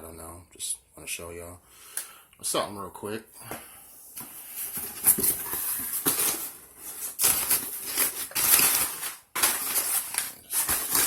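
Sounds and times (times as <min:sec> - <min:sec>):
packaging rustling and crinkling: 0:04.2 - 0:11.0.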